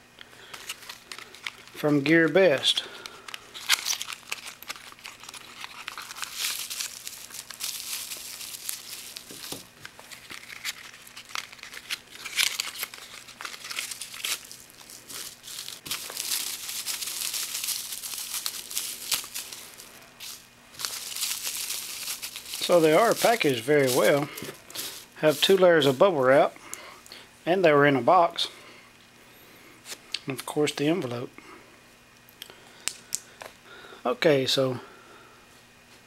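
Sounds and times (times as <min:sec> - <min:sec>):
bubble wrap crinkling and tearing: 0:00.4 - 0:26.4.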